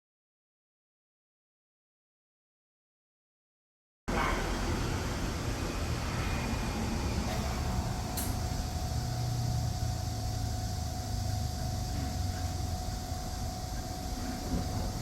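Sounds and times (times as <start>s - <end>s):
thin steady whine: 4.1s - 15.0s.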